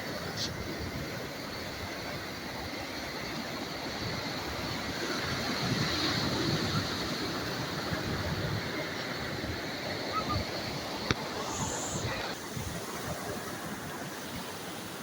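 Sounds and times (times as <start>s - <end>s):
surf washing on shore: 0.0s - 15.0s
wind buffeting microphone: 3.8s - 15.0s.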